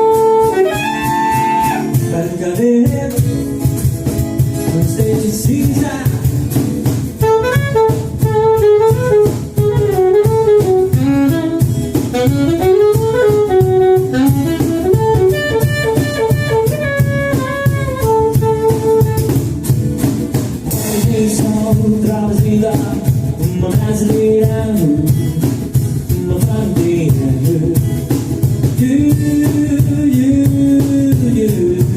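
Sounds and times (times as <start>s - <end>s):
lead melody line: 0.0s - 2.2s, 7.1s - 20.1s
bass: 0.0s - 31.9s
drum beat: 0.0s - 31.9s.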